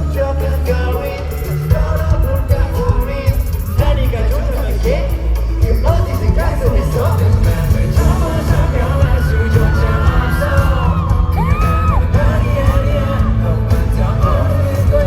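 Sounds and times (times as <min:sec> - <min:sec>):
pop song with singing voice: 0:00.0 - 0:15.0
fans yelling: 0:06.8 - 0:15.0.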